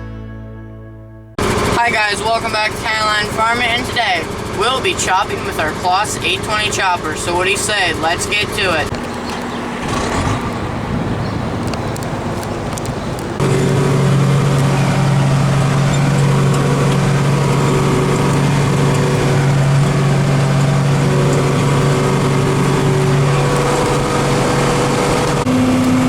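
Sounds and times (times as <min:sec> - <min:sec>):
diesel engine droning: 0:01.3 - 0:26.0.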